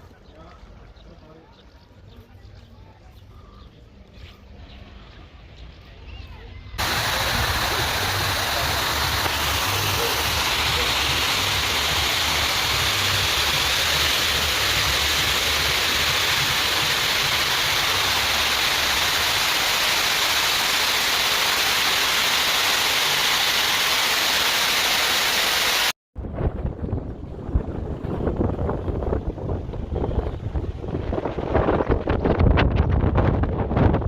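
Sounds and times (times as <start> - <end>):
rushing hissing water: 6.8 - 26.0
wind buffeting microphone: 26.2 - 34.0.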